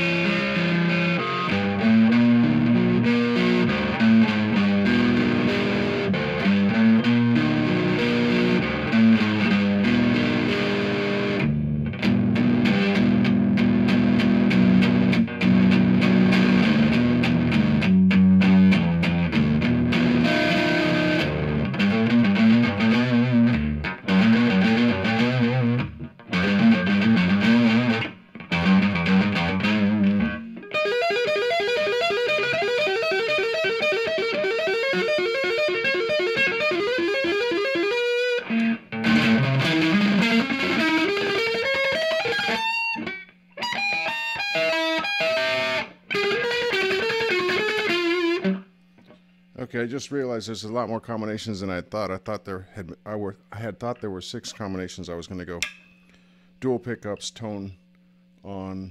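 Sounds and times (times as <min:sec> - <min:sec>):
distorted electric guitar: 0:00.0 - 0:49.7.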